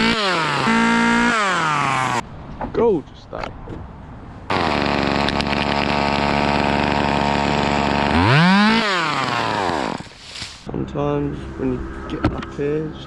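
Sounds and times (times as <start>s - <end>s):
chainsaw idling and revving: 0.0s - 2.2s, 4.5s - 10.2s.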